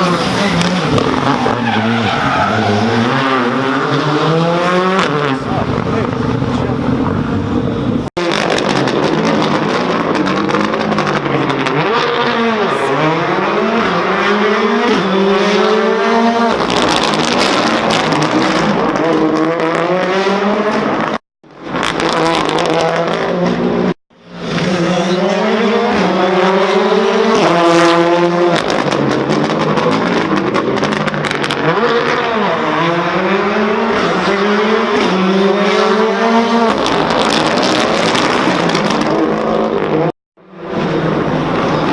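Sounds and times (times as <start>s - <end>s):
rally car engines accelerating: 0.0s - 41.9s
exhaust pops and crackles: 8.1s - 12.1s, 21.0s - 23.6s, 28.5s - 32.2s.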